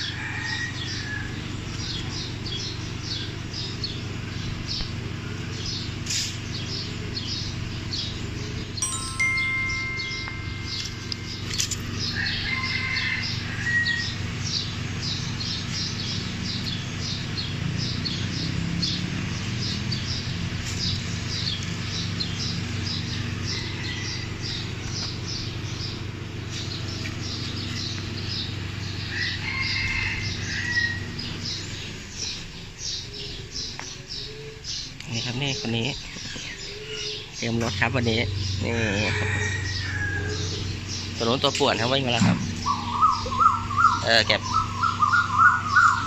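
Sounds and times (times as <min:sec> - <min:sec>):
small birds chirping: 0:00.0 - 0:46.0
steady low hum: 0:00.7 - 0:17.9.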